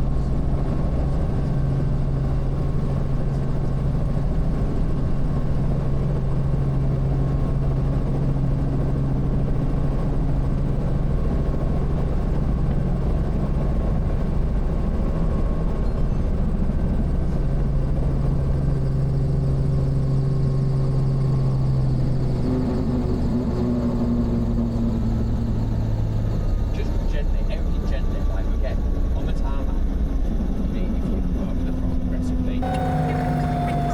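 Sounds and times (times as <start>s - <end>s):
helicopter engine and rotors: 0.0s - 33.9s.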